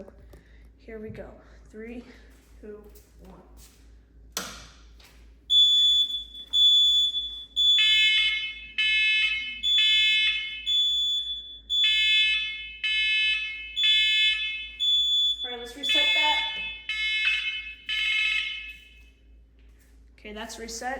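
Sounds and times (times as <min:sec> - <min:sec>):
high piercing smoke alarm beeps: 0:05.5 - 0:19.2
lower-pitched alarm beeping: 0:05.5 - 0:19.2.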